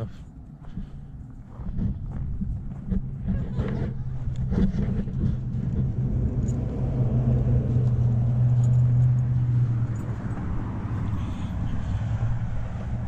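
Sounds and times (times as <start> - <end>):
car engine and road hum: 0.0 - 13.0.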